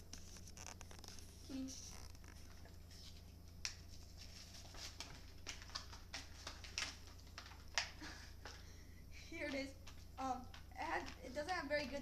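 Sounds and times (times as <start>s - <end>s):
packaging clicks and crinkling: 0.1s - 8.6s.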